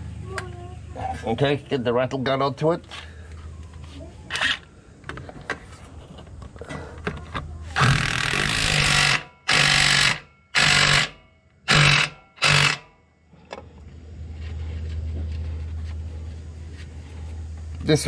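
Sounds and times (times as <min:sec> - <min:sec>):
impact wrench hammering: 0:07.8 - 0:12.9.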